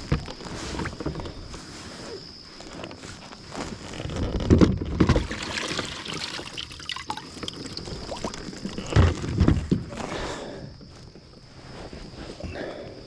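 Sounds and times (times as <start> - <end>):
water splashing and sloshing: 4.4 - 10.0.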